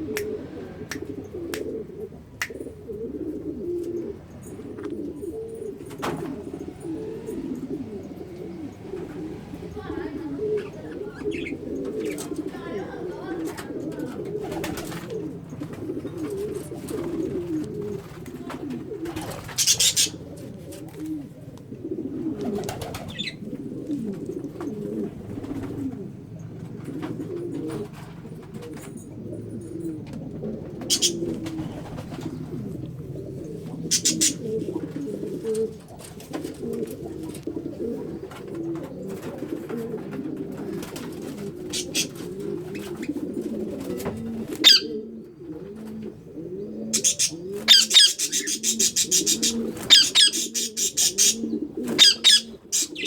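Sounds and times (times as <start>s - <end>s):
pigeons cooing: 0.0s - 53.0s
sharp high bird calls: 30.9s - 31.2s, 47.0s - 53.0s.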